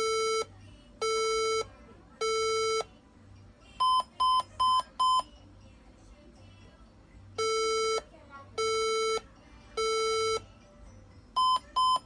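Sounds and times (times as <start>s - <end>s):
computer motherboard beeps: 3.8s - 5.3s, 11.4s - 12.0s.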